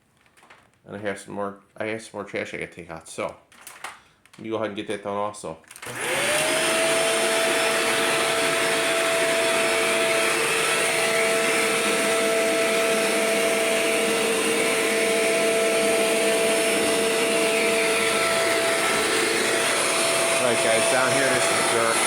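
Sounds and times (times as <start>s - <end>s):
upright vacuum cleaner running: 5.8s - 22.0s.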